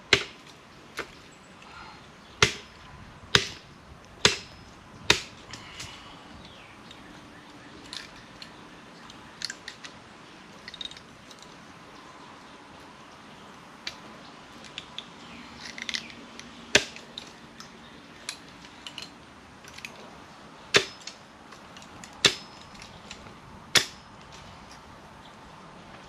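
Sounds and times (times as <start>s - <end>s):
woody stems snapping: 4.2s - 6.0s, 14.6s - 20.1s
light clicks and crackles: 13.8s - 20.2s.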